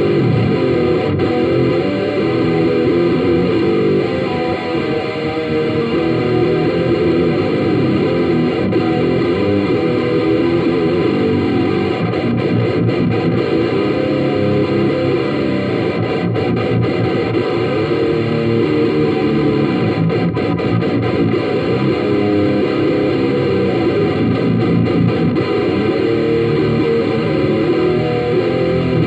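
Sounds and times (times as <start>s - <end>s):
distorted electric guitar: 0.0s - 29.0s.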